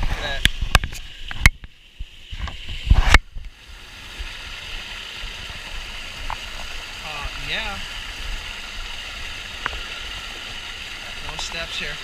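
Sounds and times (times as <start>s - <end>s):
water splashing and knocking: 0.0s - 3.4s
small waterfall rushing: 0.0s - 12.0s.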